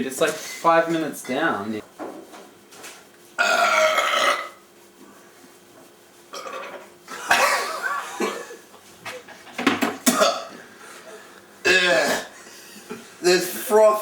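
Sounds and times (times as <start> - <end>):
man belching loudly: 3.4 - 4.6, 11.6 - 12.4.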